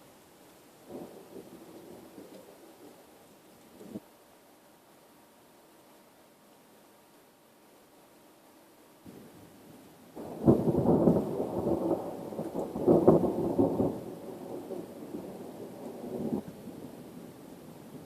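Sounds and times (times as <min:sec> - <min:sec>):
thunder cracking and rumbling: 0:10.2 - 0:17.0.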